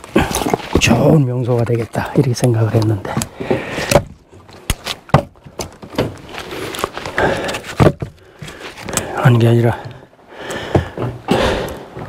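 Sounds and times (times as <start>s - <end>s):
firewood logs knocking: 0.1s - 9.2s, 9.8s - 12.0s
rustling: 2.6s - 9.4s.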